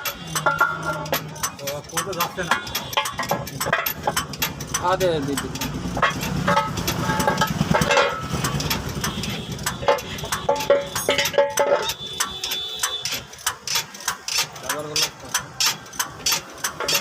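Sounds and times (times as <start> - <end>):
metal tools clinking: 0.0 - 17.0
short metallic rings: 0.0 - 17.0.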